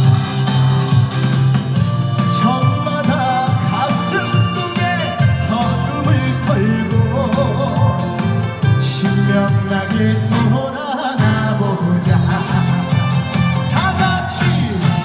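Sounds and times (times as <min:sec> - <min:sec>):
band with steady bass beat: 0:00.0 - 0:15.0
man singing with vibrato: 0:02.0 - 0:15.0.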